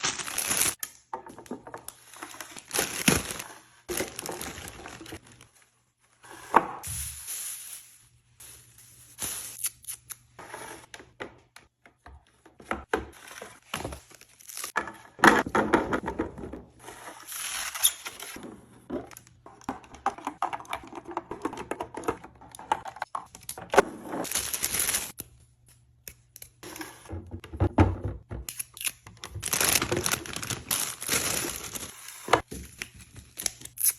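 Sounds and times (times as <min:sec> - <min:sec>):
plastic packaging crinkling: 0:02.0 - 0:05.6, 0:24.2 - 0:25.2, 0:29.4 - 0:32.3.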